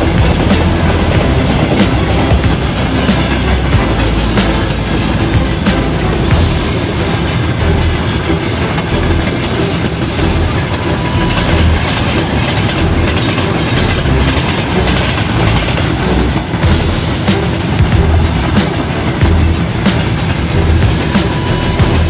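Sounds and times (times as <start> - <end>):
train rumbling on rails: 0.0 - 22.0
train wheels clattering: 0.0 - 22.0.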